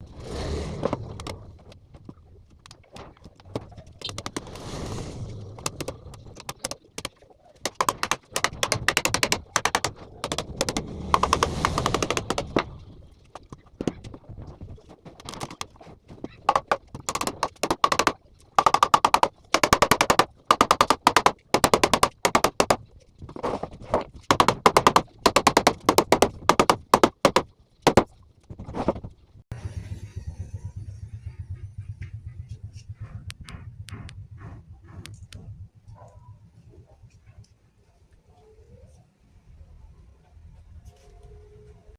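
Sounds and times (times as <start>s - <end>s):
hammer knocking on wooden door: 7.7s - 12.6s, 16.5s - 22.8s, 24.3s - 28.1s.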